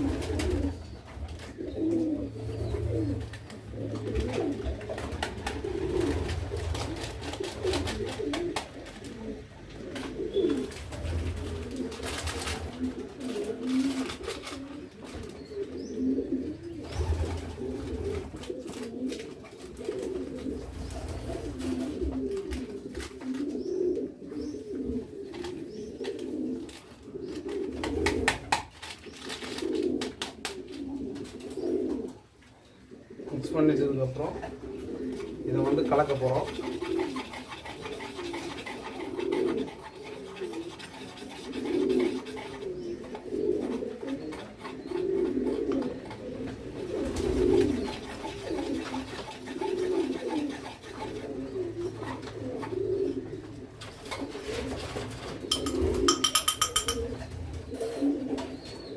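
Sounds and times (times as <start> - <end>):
pigeons cooing: 0.0 - 58.9
handling clicks and knocks: 55.5 - 57.2.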